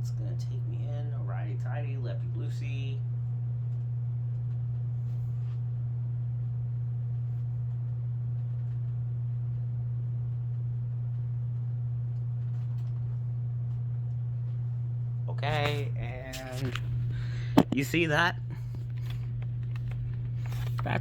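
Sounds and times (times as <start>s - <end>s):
low hum: 0.0s - 21.0s
faint handling sounds: 15.5s - 21.0s.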